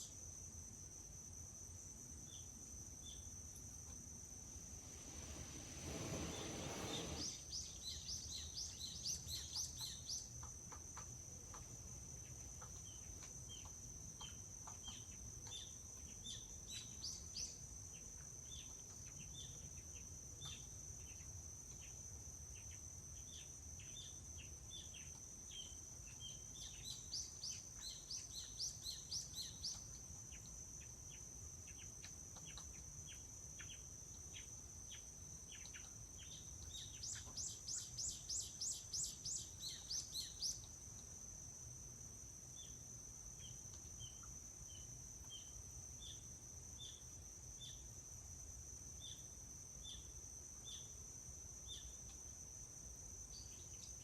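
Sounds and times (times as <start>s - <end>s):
faint low rumble: 3.6s - 8.0s
small birds chirping: 4.7s - 17.6s, 23.3s - 41.1s.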